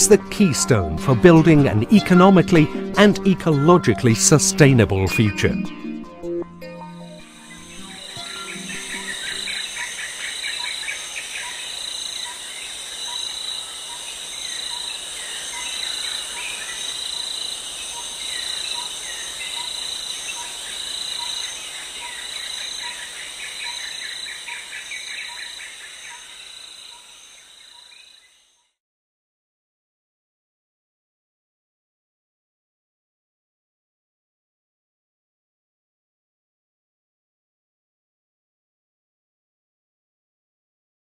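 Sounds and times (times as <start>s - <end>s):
insects chirping: 7.2s - 28.7s
birds singing: 7.4s - 28.5s.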